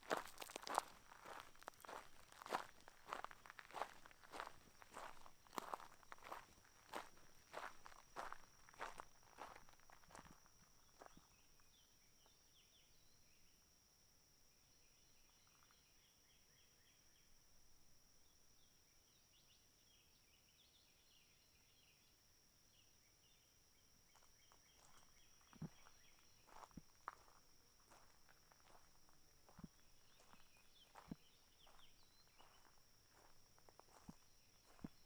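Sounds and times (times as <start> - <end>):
footsteps: 0.0 - 10.4.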